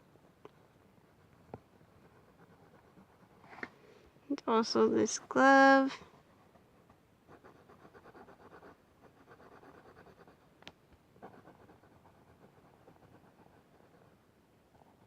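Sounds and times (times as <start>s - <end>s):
marker scratching on paper: 1.0s - 3.6s, 6.4s - 10.5s, 11.2s - 14.1s.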